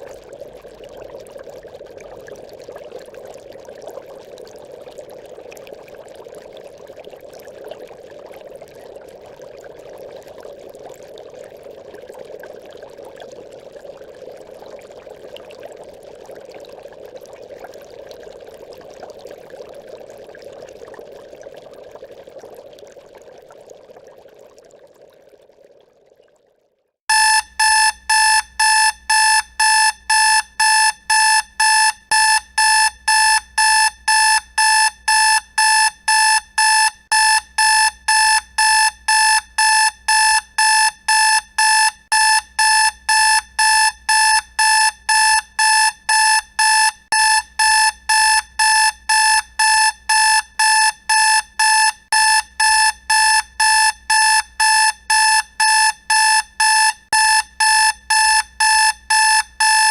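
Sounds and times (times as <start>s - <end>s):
alarm clock beeping: 27.1s - 59.9s.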